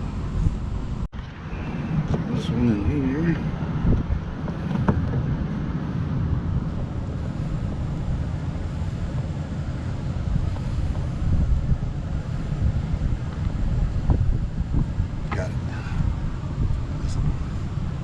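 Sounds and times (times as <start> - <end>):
wind rumbling on microphone: 0.0 - 18.0.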